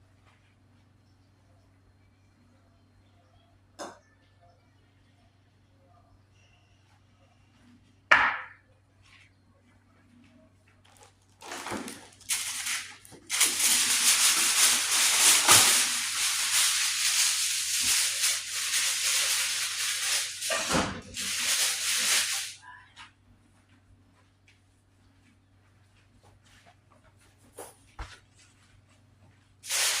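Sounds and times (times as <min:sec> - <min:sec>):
loud steady hissing: 0:12.2 - 0:22.6, 0:29.6 - 0:30.0.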